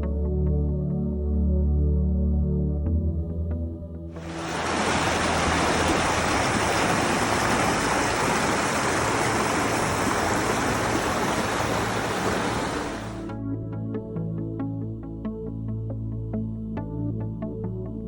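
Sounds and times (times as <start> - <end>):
rushing water: 4.2 - 13.3.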